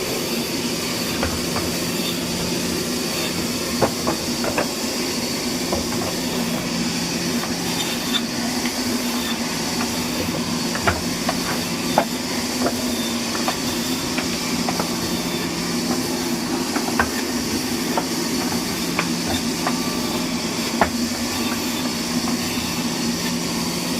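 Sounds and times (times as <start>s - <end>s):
machine running with low drone: 0.0s - 23.9s
sharp clicks and knocks: 16.7s - 17.3s.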